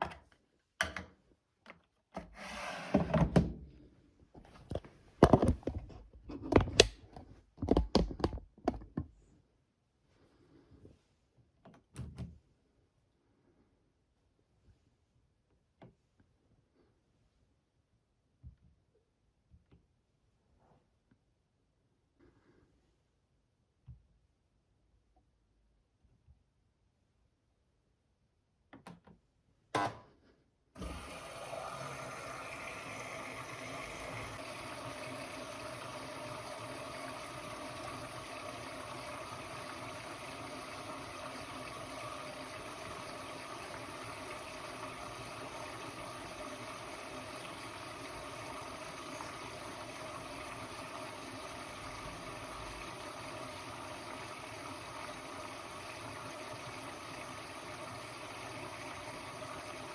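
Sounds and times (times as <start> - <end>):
water rushing into machine: 4.5 - 6.9, 30.8 - 59.9.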